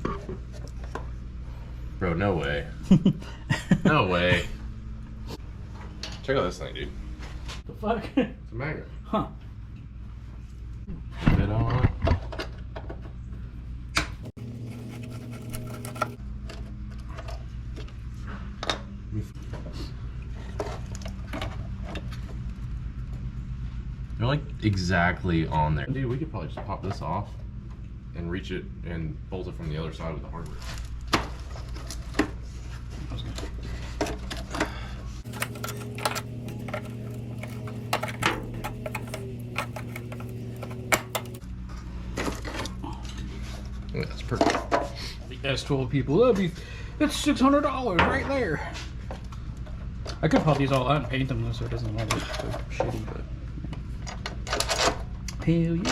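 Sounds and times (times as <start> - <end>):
clicks and rattles of tools: 34.0 - 41.4
steady low hum: 35.2 - 41.5.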